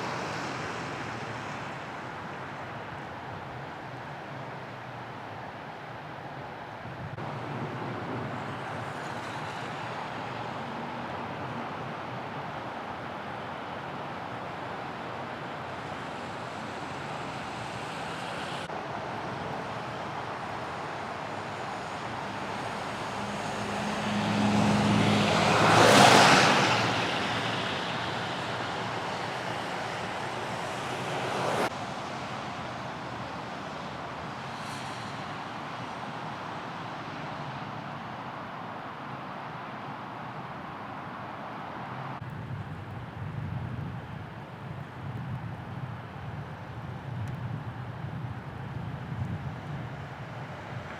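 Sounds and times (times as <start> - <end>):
street traffic noise: 0.0 - 50.9
vehicle passing close: 22.6 - 28.4.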